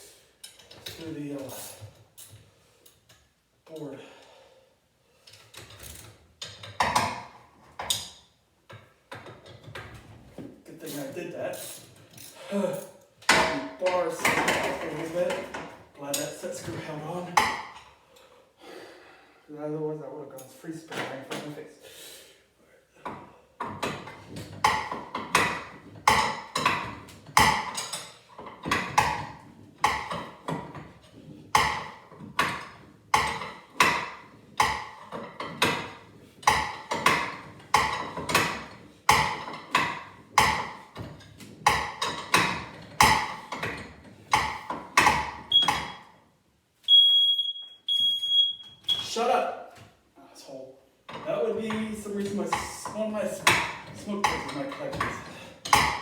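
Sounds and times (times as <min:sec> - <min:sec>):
smoke detector beeps: 0:45.5 - 0:46.0, 0:46.9 - 0:49.1.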